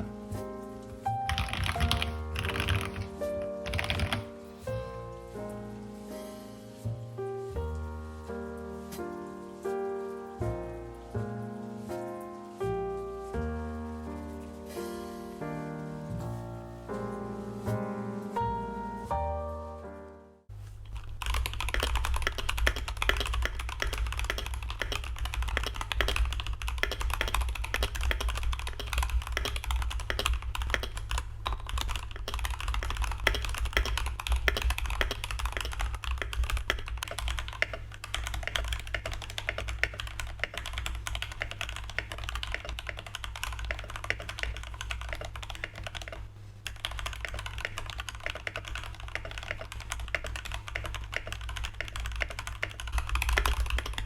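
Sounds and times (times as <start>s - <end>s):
mechanical keyboard typing: 1.3s - 4.3s, 20.8s - 54.0s.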